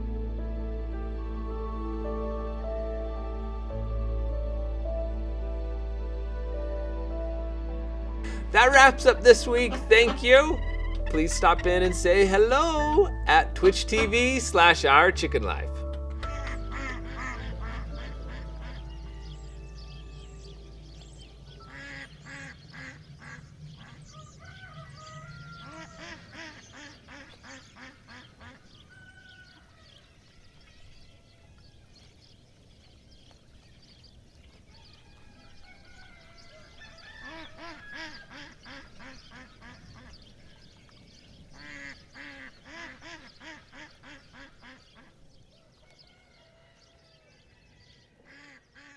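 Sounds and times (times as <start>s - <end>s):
ducks quacking: 8.3s - 29.7s, 36.5s - 40.6s, 41.5s - 45.2s, 48.2s - 48.9s.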